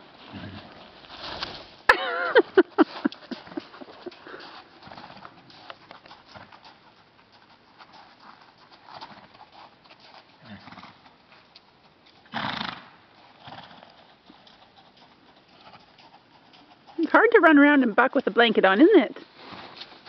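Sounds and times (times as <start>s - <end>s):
hoof knocks and clicks: 2.4s - 12.3s, 13.9s - 20.0s
horse breathy snort: 3.4s - 5.1s.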